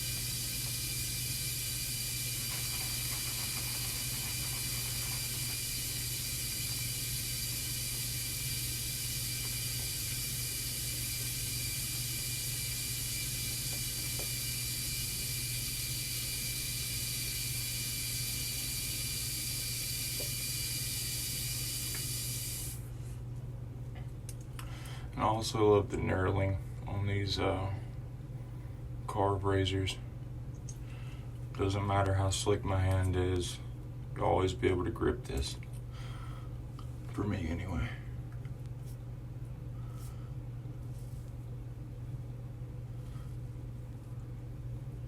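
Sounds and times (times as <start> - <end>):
tap water running into sink: 2.0 - 7.8.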